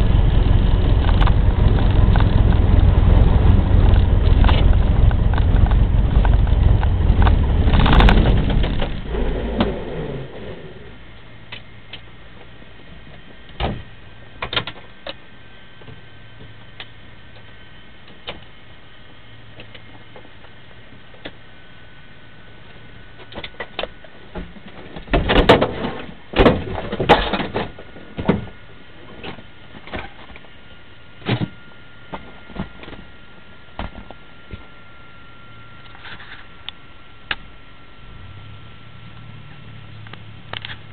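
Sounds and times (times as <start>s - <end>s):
airplane engine running: 0.0s - 25.0s
faint steady hum: 0.0s - 40.9s.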